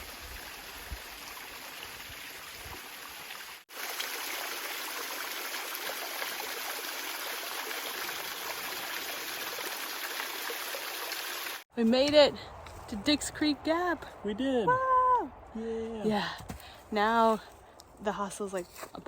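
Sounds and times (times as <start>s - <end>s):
stream water running: 0.0s - 11.7s.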